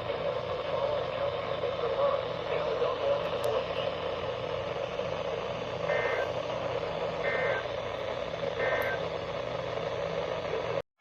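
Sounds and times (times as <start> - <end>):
two-tone data bursts: 5.8 - 6.5, 7.1 - 7.8, 8.4 - 9.1.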